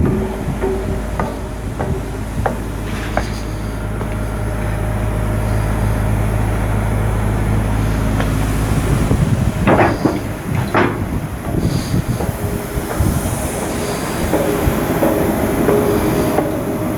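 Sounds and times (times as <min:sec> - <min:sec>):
sharp metal knocks: 0:00.0 - 0:04.2, 0:09.5 - 0:16.1
heavy machinery hum: 0:00.0 - 0:16.9.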